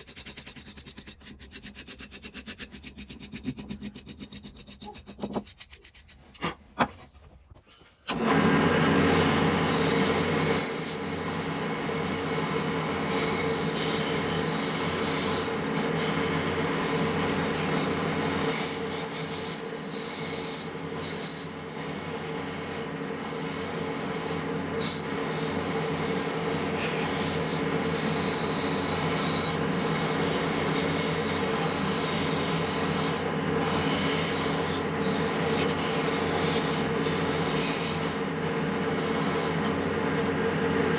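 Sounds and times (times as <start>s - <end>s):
electric abrading tool: 8.1s - 39.8s.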